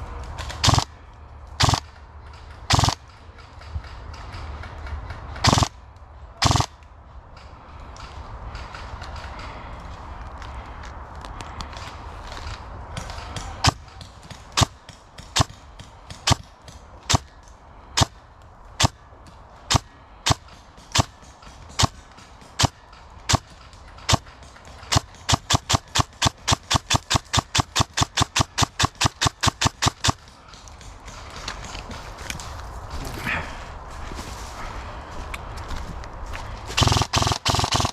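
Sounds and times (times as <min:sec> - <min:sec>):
airsoft gun shots: 0:01.6 - 0:01.9, 0:02.7 - 0:03.0, 0:05.4 - 0:05.7, 0:06.4 - 0:06.7.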